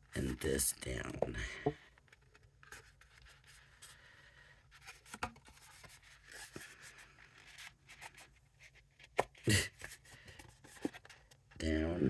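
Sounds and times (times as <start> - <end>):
paper rustling and scraping: 1.9 - 11.4.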